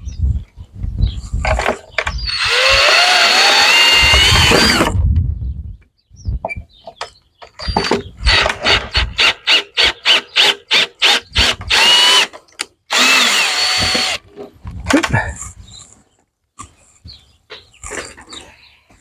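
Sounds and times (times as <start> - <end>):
drill driving screws into wood: 2.3 - 5.0, 8.3 - 14.2.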